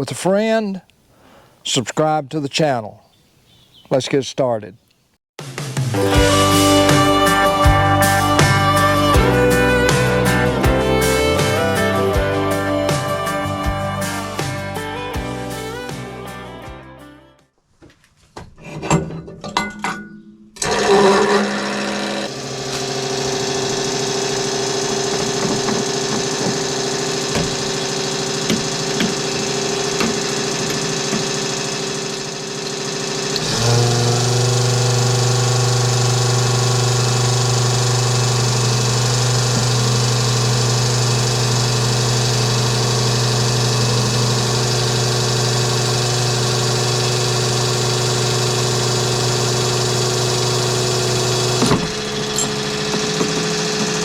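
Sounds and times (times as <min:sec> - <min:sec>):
engine starting and running: 0:05.9 - 0:16.0, 0:20.6 - 0:54.0.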